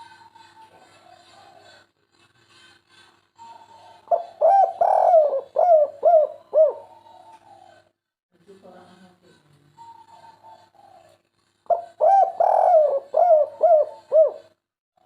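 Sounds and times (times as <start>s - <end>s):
dove cooing: 0.0s - 1.9s, 3.4s - 7.9s, 9.8s - 14.6s.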